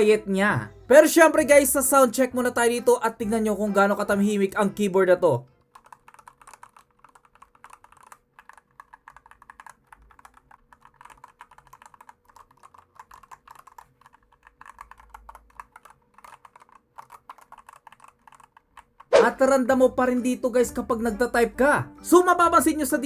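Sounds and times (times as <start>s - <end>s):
mechanical keyboard typing: 5.6s - 19.2s.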